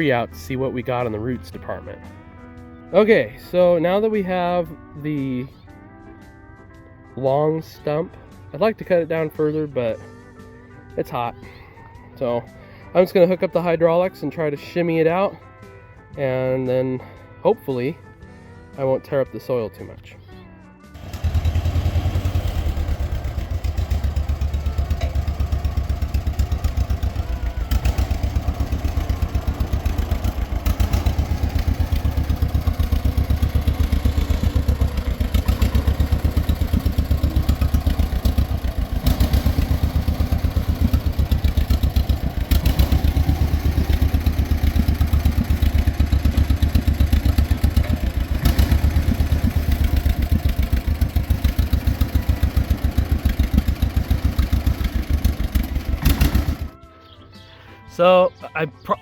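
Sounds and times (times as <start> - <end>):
engine knocks: 21.0 - 56.8
tractor engine idling: 21.0 - 56.8.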